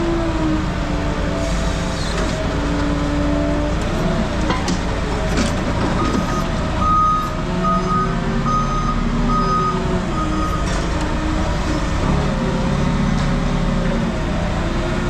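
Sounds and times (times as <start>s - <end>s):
diesel engine running: 0.0s - 15.0s
vehicle backup alarm beeping: 6.0s - 10.9s.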